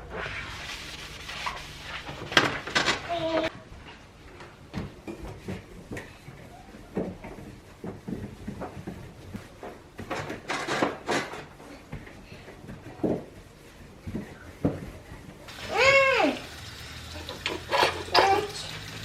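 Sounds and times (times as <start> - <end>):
knocks and clatter of objects: 2.2 - 3.5, 4.4 - 15.4.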